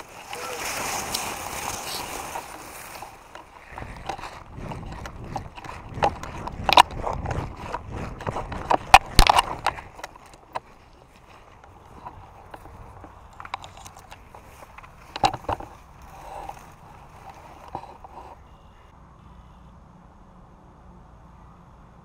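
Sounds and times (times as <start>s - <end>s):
hurried footsteps: 0.0s - 18.5s
gear knocking: 2.2s - 18.4s.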